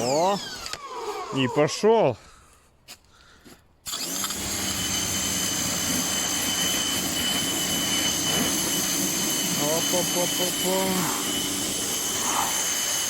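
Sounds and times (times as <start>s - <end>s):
electric pressure washer running: 3.9s - 13.0s.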